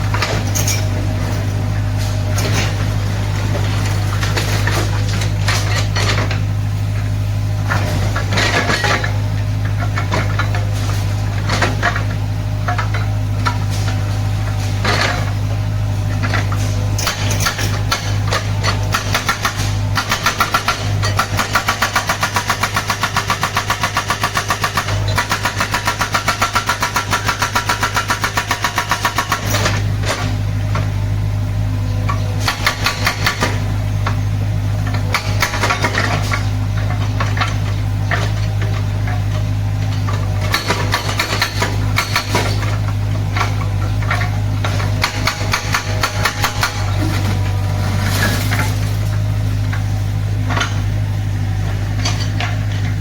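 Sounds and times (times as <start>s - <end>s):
excavator diesel engine running: 0.0s - 53.0s
hydraulic breaker hammering: 16.3s - 30.4s, 32.4s - 34.2s, 34.8s - 49.8s.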